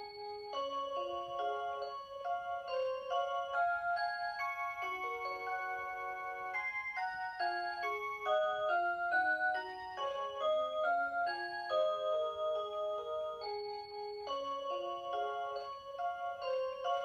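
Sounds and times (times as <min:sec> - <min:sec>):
alarm clock electronic chime melody: 0:00.0 - 0:17.0.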